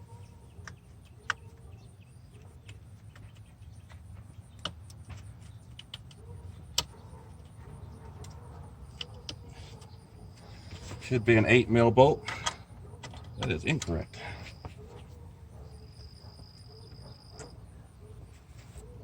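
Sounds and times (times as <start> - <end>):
hand tools clicking and tapping: 2.4 - 9.9, 12.2 - 14.0.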